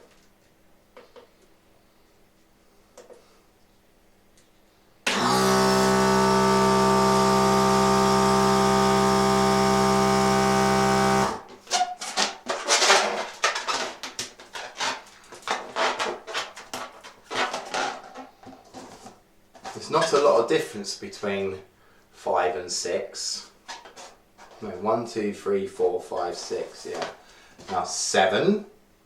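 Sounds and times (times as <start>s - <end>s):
electric balloon inflator running: 5.1s - 11.5s
rubbery balloon squeaks and rustles: 11.5s - 19.0s.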